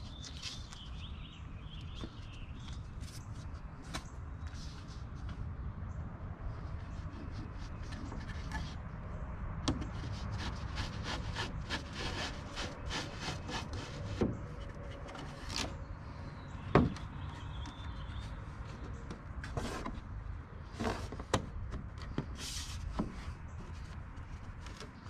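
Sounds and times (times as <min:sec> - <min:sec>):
wood scraping on wood: 0:06.6 - 0:09.0, 0:09.7 - 0:15.9, 0:16.9 - 0:20.1, 0:20.7 - 0:21.4.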